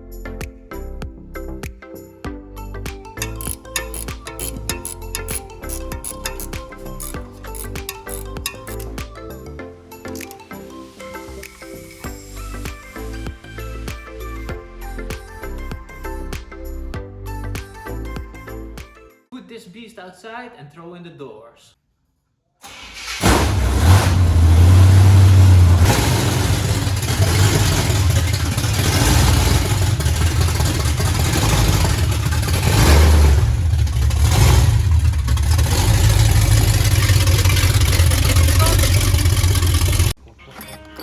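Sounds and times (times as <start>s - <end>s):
truck engine rumbling: 23.2s - 41.0s.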